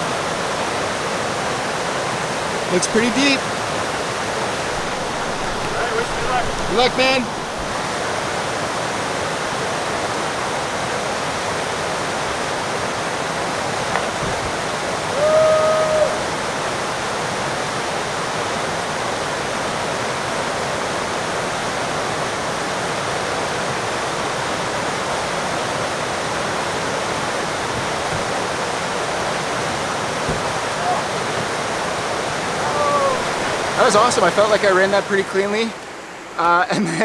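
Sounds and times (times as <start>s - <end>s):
river rapids rushing: 0.0s - 37.0s
faint knock: 4.7s - 7.7s, 30.2s - 30.6s.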